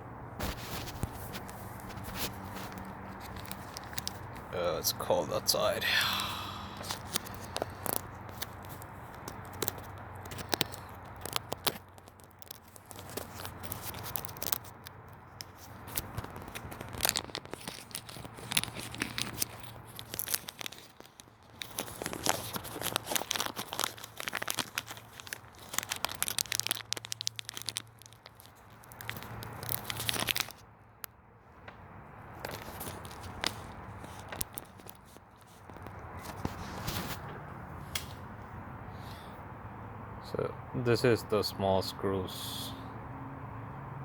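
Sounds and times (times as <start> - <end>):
plastic packaging crinkling and tearing: 0.4 - 5.9, 6.6 - 30.7, 32.3 - 37.4
handling clicks and rattles: 6.8 - 30.6.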